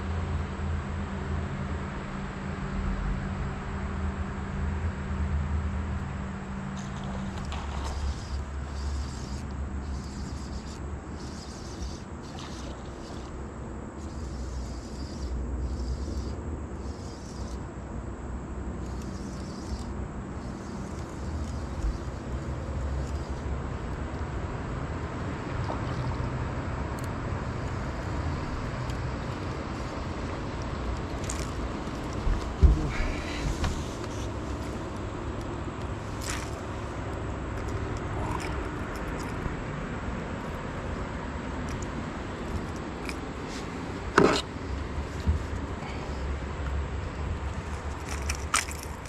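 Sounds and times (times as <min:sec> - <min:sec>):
boat motor drone: 0:00.0 - 0:49.0.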